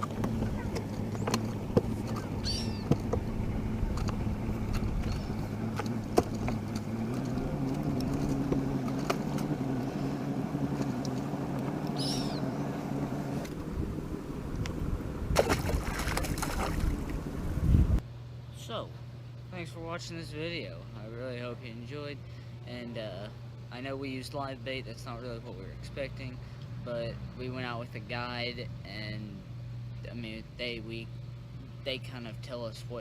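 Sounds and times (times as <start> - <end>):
boat motor running: 0.0 - 18.0.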